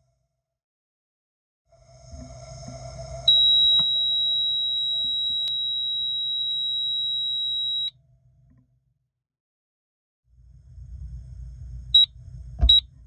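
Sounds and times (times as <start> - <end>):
low hum: 1.7 - 8.6, 10.3 - 13.0
high-pitched steady alarm tone: 2.6 - 7.9.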